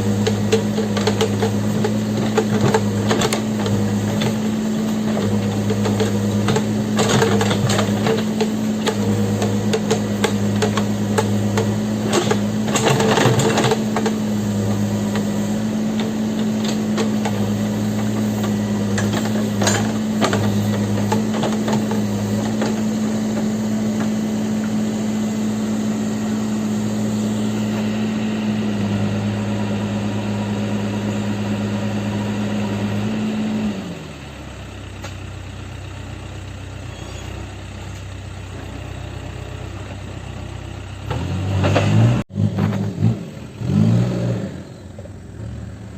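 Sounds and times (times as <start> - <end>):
backhoe diesel engine: 0.0 - 45.9.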